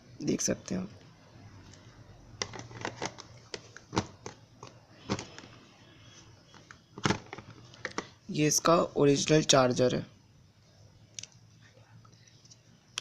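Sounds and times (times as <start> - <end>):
box and accessories being handled: 2.4 - 5.6, 6.4 - 8.2.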